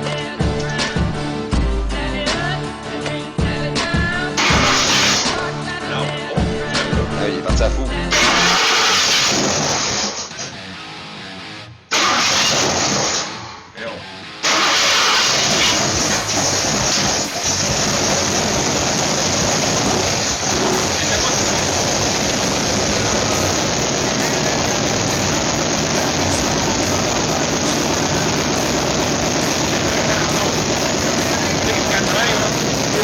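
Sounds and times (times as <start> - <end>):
engine running loudly: 4.4 - 5.5, 8.1 - 10.5, 11.9 - 13.4, 14.4 - 33.0.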